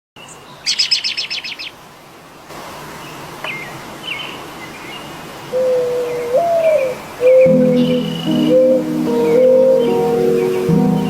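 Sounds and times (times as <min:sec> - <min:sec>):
steady hiss: 0:01.6 - 0:11.0
birds chirping: 0:02.9 - 0:11.0.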